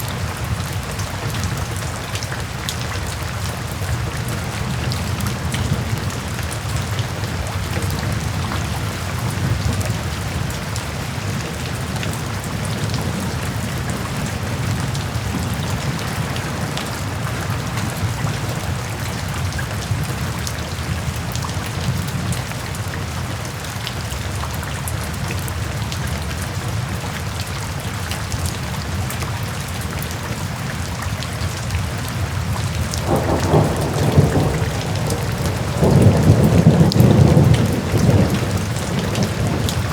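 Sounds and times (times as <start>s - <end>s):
steady rain falling: 0.0s - 39.9s
thunder rumble: 33.0s - 39.9s.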